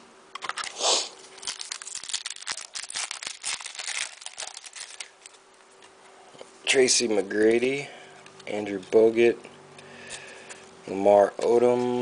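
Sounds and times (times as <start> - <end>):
foil wrapper crinkling and tearing: 0.4 - 5.4.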